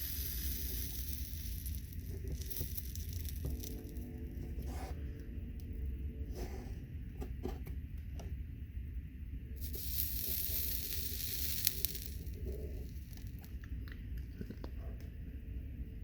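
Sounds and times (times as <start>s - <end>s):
solder flux sizzling: 0.0s - 7.7s, 9.3s - 14.2s.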